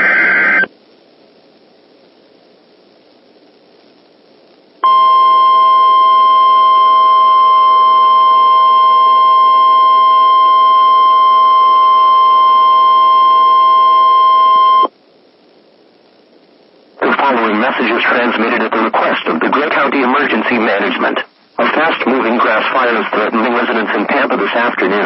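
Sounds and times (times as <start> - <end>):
faint radio hiss: 0.0 - 25.0
steady loud alarm tone: 4.8 - 14.9.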